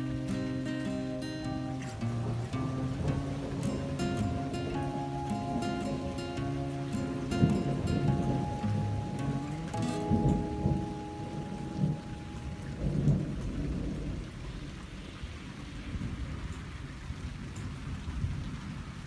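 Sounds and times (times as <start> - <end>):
steady rain: 0.0 - 19.0
thunder rumbling: 2.0 - 17.0.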